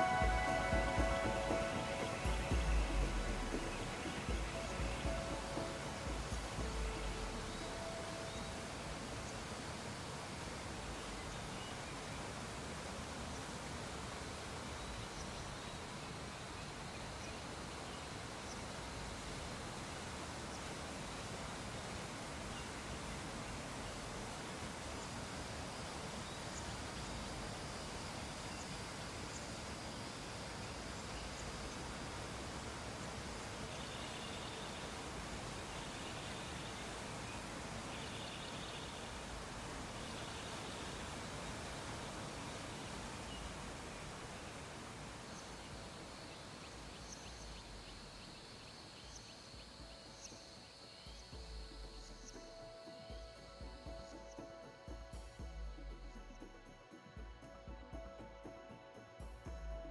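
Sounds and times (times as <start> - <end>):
faint high-pitched trill: 0.0 - 9.4
background hiss: 0.0 - 59.9.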